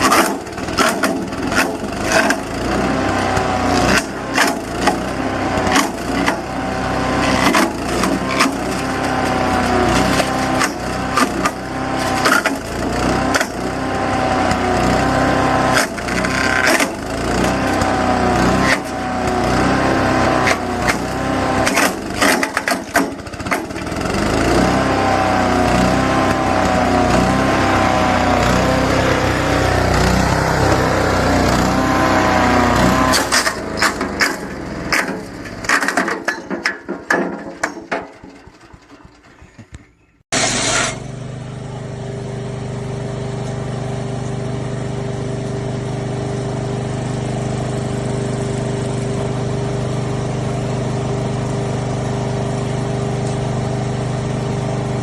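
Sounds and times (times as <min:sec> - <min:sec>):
wood chipper knocks and cracks: 0:00.0 - 0:40.1
small gas engine running: 0:00.0 - 0:55.0.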